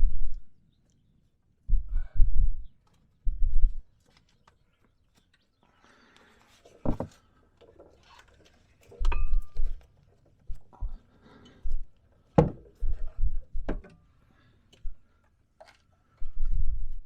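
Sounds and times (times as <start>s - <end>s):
metal tools clinking and knocking: 7.6s - 10.0s.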